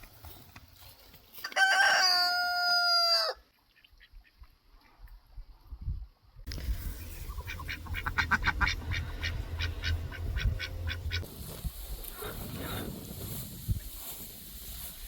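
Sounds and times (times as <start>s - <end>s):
low rumble: 6.5s - 13.7s
fowl calling rapidly: 7.2s - 11.3s.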